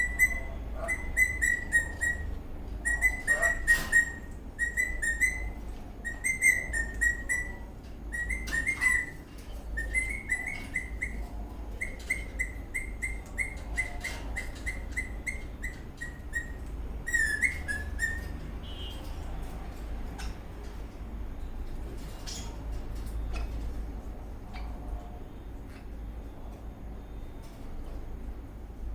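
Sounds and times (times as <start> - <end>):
parrot whistling: 0.0 - 9.2, 9.8 - 11.2, 11.8 - 18.3.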